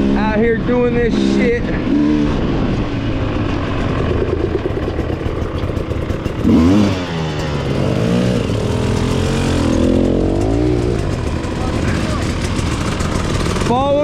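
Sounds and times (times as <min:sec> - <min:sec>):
dirt bike engine revving: 0:00.0 - 0:14.0.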